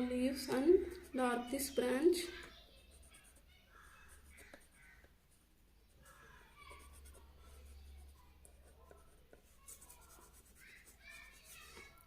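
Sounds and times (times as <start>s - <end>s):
pencil scratching on paper: 2.8s - 5.1s, 6.0s - 12.0s.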